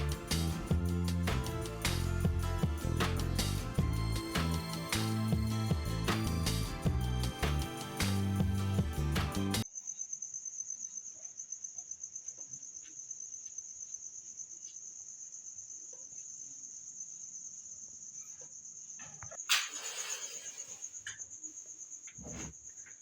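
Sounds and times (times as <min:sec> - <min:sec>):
cricket chirping: 0:09.6 - 0:23.0.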